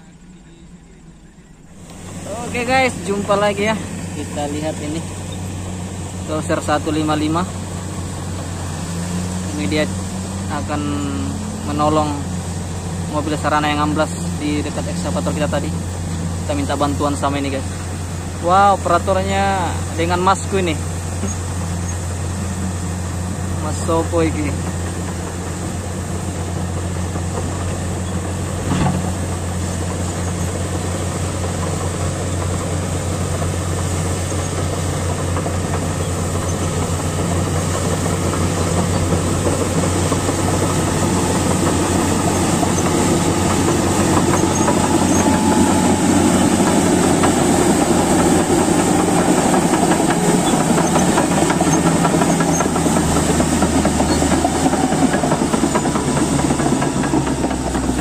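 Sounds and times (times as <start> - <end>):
bulldozer diesel engine running: 0.0 - 58.0
tracks clattering: 0.1 - 58.0.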